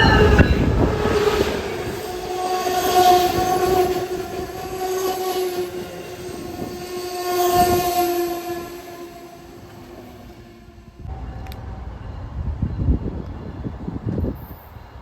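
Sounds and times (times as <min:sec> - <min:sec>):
train air horn: 0:00.0 - 0:10.3.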